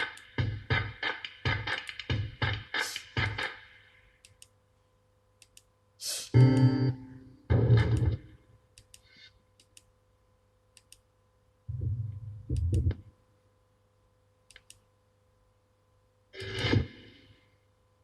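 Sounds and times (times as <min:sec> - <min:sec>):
faint electrical hum: 0:00.0 - 0:18.0
sharp clicks: 0:05.4 - 0:05.7, 0:14.5 - 0:14.8.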